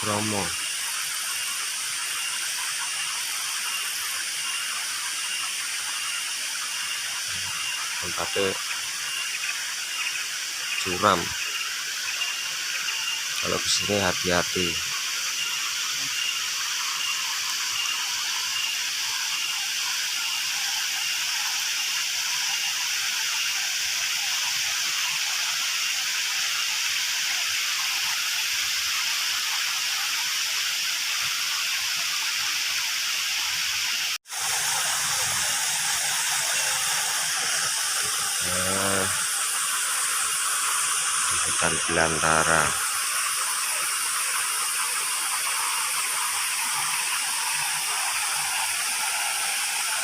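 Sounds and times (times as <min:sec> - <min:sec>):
waterfall rushing: 0:00.0 - 0:00.8, 0:06.9 - 0:08.6, 0:34.2 - 0:50.0.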